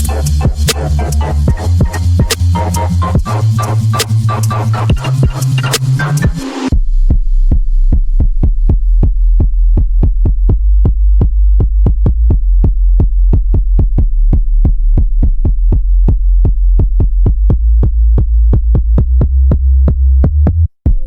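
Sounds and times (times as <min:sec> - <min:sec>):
electronic music: 0:00.0 - 0:06.8
deep bass drone: 0:00.0 - 0:21.0
kick drum beat: 0:01.4 - 0:03.4, 0:06.2 - 0:21.0.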